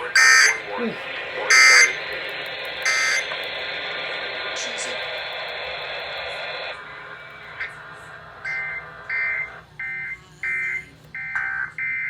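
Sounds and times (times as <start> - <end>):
buzzing two-tone digital bursts: 0.0 - 5.2
radio hiss: 0.0 - 11.8.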